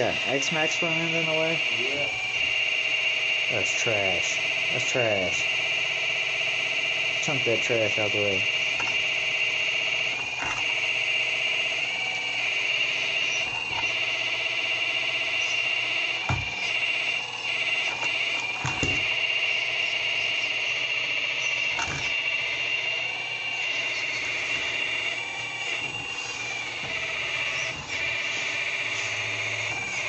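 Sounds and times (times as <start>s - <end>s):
rc excavator high-pitched whine: 0.0s - 30.0s.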